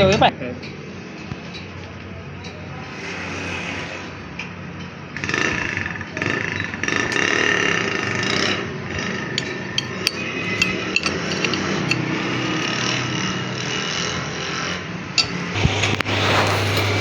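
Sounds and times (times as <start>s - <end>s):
hammer tapping on metal: 9.4s - 12.7s, 15.2s - 15.5s
workshop machinery humming: 9.4s - 13.3s, 14.8s - 17.0s.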